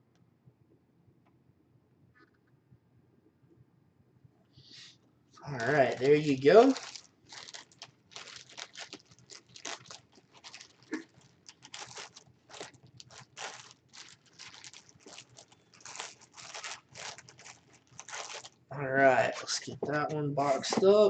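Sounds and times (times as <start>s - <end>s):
packaging rustling and crinkling: 5.4s - 21.0s.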